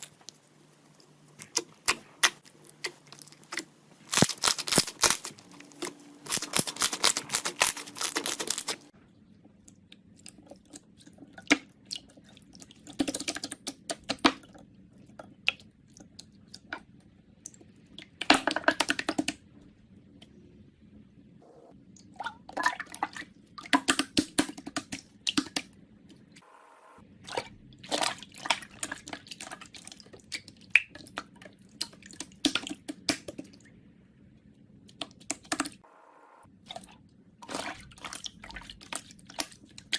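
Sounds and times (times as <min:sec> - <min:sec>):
slime squishing with wet pops: 0:00.0 - 0:08.9, 0:09.5 - 0:19.4, 0:23.0 - 0:26.2, 0:36.6 - 0:39.9.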